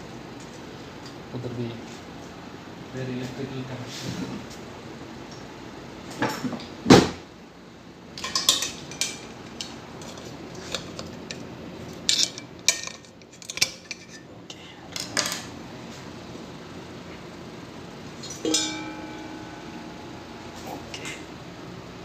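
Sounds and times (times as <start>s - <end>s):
metal parts clinking: 12.0s - 14.2s.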